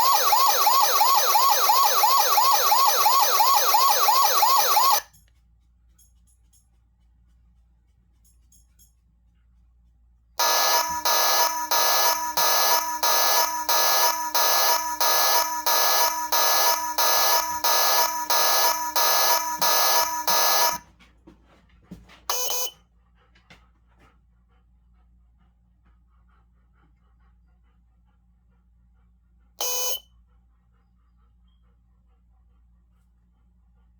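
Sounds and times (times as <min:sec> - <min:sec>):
siren pulsing alarm tone: 0:00.0 - 0:05.0, 0:10.4 - 0:20.8.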